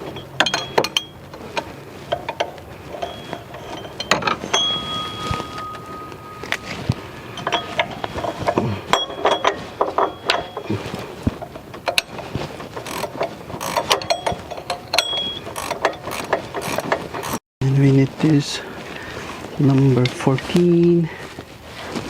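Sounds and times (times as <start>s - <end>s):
metal tools clinking: 0.0s - 17.4s
ratchet clicks: 12.8s - 17.4s.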